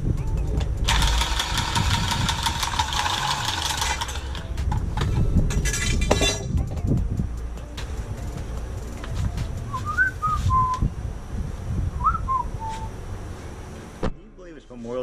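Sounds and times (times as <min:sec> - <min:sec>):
low rumble: 0:00.0 - 0:13.8
person whistling: 0:09.7 - 0:10.9, 0:12.0 - 0:12.9.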